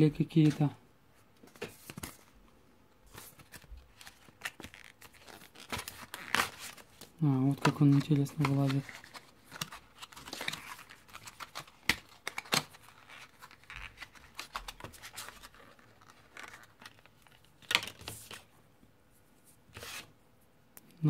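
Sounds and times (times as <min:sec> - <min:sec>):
plastic packaging crinkling: 0:03.1 - 0:18.3.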